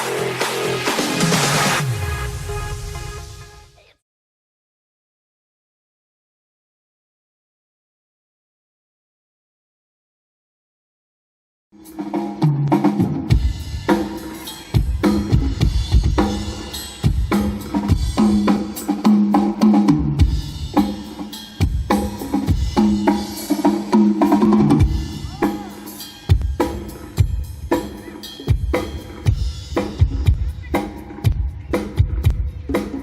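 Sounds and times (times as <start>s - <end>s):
loud music through pa system: 0.0s - 4.0s, 11.8s - 33.0s.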